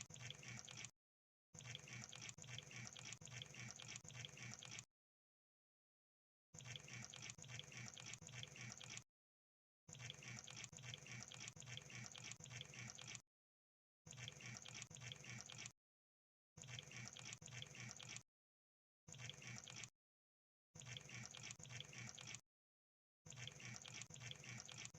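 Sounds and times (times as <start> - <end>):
crackling clicks and bubbling: 0.0 - 0.9, 1.6 - 4.9, 6.6 - 9.0, 9.9 - 13.2, 14.1 - 15.7, 19.1 - 19.9, 20.8 - 22.4, 23.3 - 24.9.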